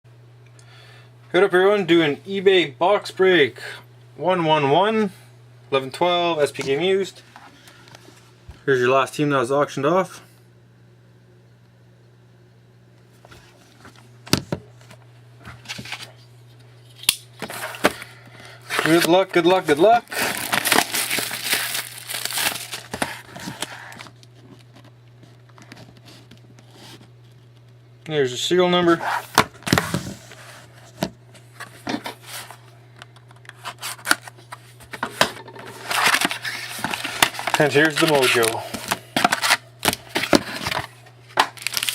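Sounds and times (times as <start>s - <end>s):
steady low hum: 0.1s - 41.9s
packaging rustling: 17.4s - 24.9s, 33.4s - 41.9s
trading cards being handled: 18.7s - 24.6s, 33.3s - 41.9s.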